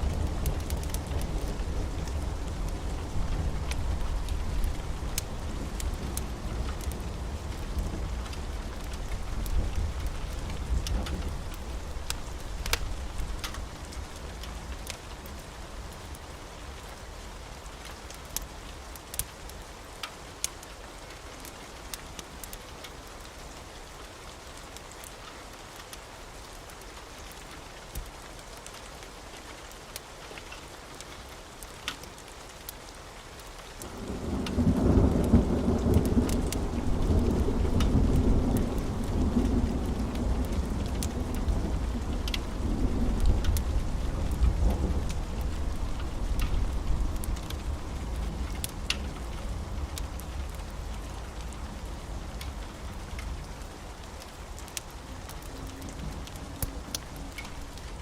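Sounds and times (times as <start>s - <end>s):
steady rain: 0.0s - 58.0s
rolling thunder: 34.0s - 51.0s.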